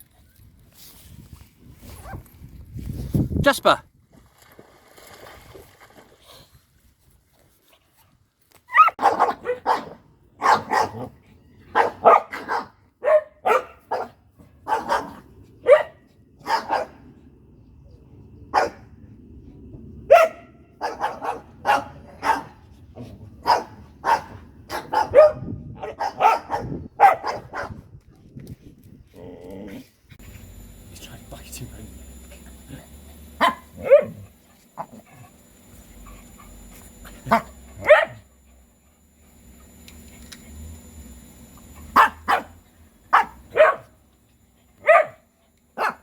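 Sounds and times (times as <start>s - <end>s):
dogs barking sharply: 8.7s - 11.1s, 11.7s - 17.0s, 20.1s - 22.6s, 23.4s - 27.8s, 33.4s - 34.2s, 37.2s - 38.2s, 41.9s - 44.0s, 44.8s - 45.2s, 45.8s - 46.0s
dogs growling low: 29.0s - 30.2s.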